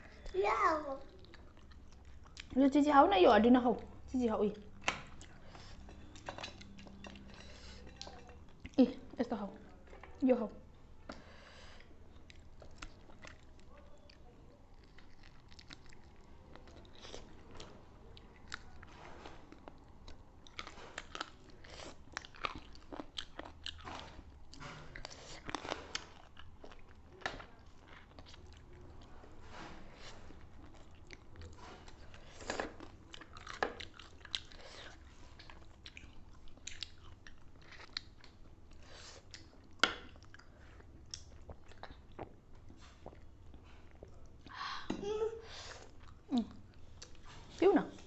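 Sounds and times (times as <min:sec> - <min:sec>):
crunchy chewing: 0:12.1 - 0:44.3.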